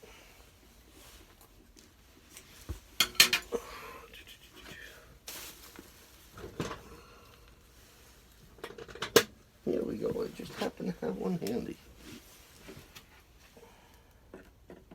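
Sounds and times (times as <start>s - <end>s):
short rustle: 4.3s - 6.6s, 10.1s - 13.5s.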